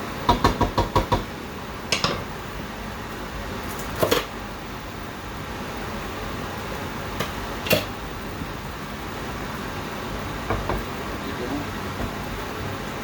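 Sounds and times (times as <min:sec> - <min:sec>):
steady kitchen hum: 0:00.0 - 0:13.0
cookware knocking: 0:01.9 - 0:02.3, 0:10.5 - 0:10.9.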